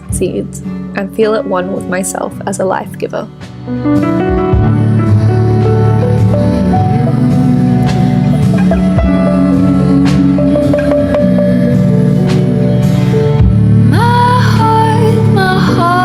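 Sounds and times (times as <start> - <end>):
gentle guitar music: 0.0 - 16.0.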